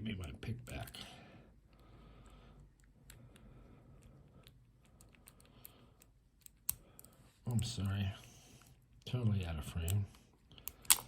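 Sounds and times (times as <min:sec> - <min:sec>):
lock pick clicking and scraping: 0:10.6 - 0:11.0.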